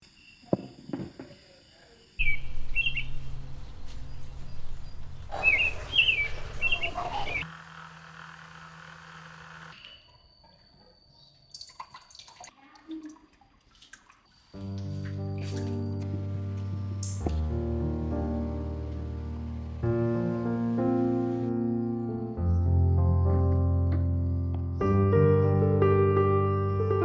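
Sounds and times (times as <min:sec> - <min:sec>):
birds chirping: 0:02.2 - 0:07.5
loud low hum: 0:16.0 - 0:22.4.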